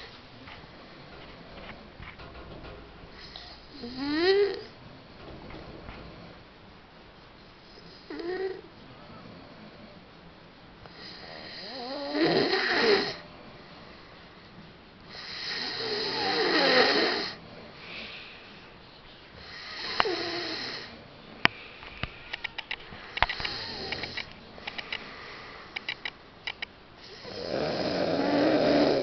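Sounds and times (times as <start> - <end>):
man snoring: 3.7 - 4.7, 11.0 - 13.2, 15.1 - 17.4, 19.4 - 20.9, 23.4 - 24.2, 27.0 - 29.0.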